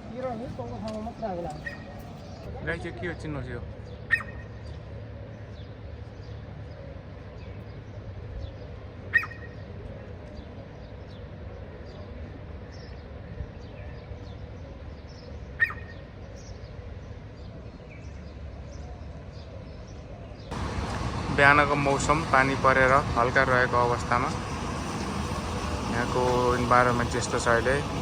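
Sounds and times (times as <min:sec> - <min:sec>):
small birds chirping: 0:00.1 - 0:28.0
loud sharp bird call: 0:04.1 - 0:04.6, 0:15.6 - 0:16.1.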